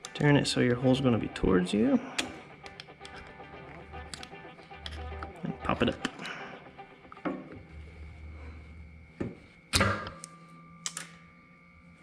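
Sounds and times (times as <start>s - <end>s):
metallic clicks of hand tools: 2.2s - 3.3s, 9.7s - 11.2s.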